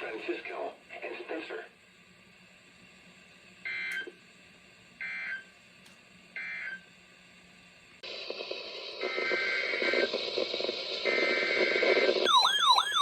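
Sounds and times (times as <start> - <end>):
loud noisy sound: 8.0 - 13.0
screeching data bursts: 8.1 - 13.0.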